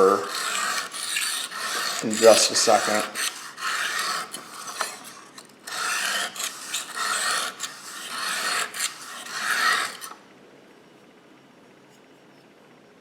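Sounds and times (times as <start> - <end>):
knife scraping on sharpening stone: 0.0 - 10.2.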